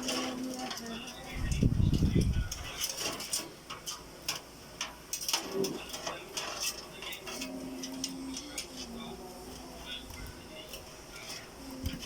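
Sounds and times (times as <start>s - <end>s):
clicks and clinks of computer parts: 2.5s - 8.8s.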